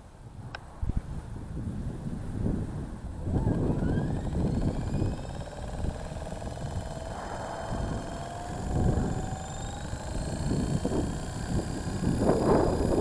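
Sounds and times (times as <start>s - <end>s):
wind buffeting microphone: 0.2s - 13.0s
model helicopter motor whine: 3.2s - 13.0s.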